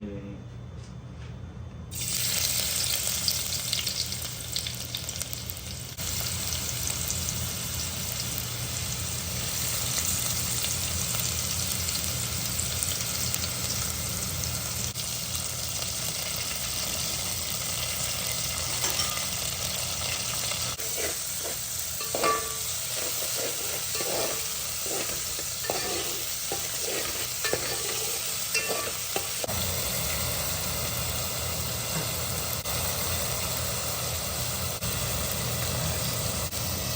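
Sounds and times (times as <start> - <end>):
food sizzling in a pot: 1.9 - 36.9
spoon knocking against a pot: 22.0 - 22.6.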